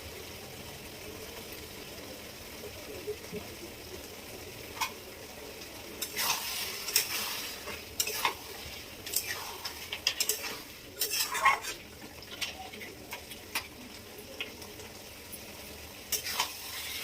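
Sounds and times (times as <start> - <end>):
curry sizzling in a pan: 0.0 - 17.0
spatula scraping a pan: 6.0 - 13.7.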